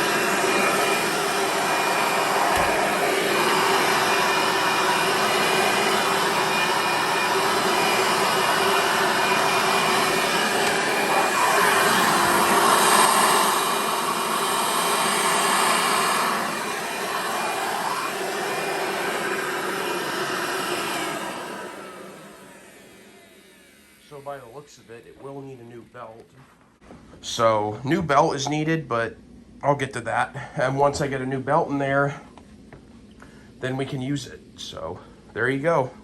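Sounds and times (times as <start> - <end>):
vacuum cleaner motor whine: 0.0 - 26.2.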